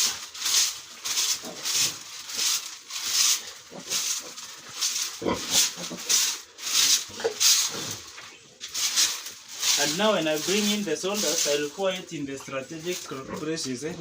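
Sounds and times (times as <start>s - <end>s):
broom sweeping sawdust: 0.0s - 14.0s
pig grunting: 5.1s - 6.3s.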